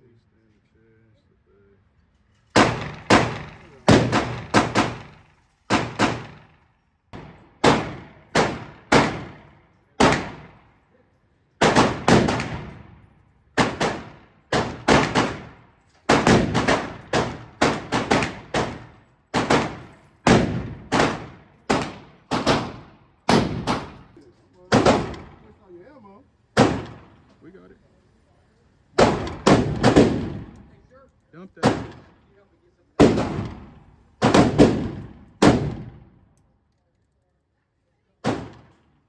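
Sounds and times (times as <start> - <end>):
gunshots with echo: 2.6 - 6.5, 7.2 - 10.6, 11.6 - 13.0, 13.6 - 24.1, 24.7 - 25.4, 29.0 - 30.6, 33.0 - 36.0.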